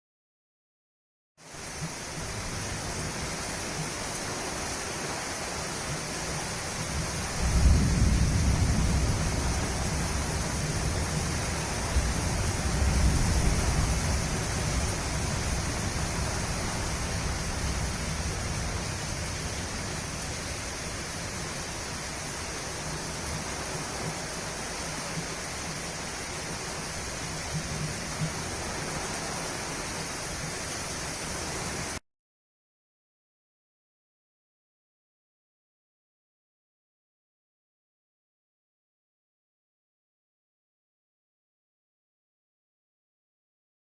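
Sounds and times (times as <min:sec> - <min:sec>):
steady rain: 0:01.4 - 0:32.0
distant thunder rumbling: 0:06.8 - 0:23.6.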